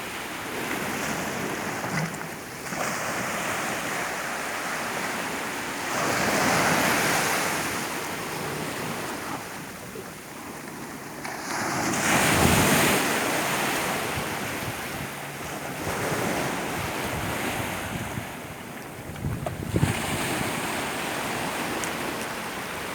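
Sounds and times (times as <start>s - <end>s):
waves washing onto beach: 0.0s - 22.9s
wind buffeting microphone: 12.0s - 22.9s.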